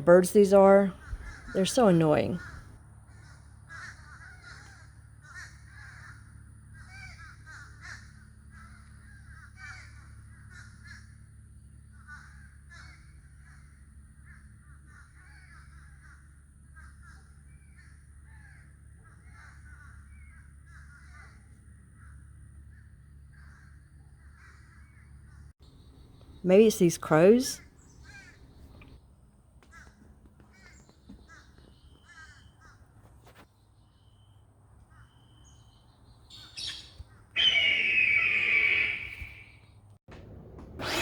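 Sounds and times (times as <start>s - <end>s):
steady low hum: 0.0s - 33.1s
crows cawing: 2.4s - 11.2s, 11.9s - 22.2s, 23.3s - 25.1s, 29.6s - 32.8s, 37.4s - 39.6s.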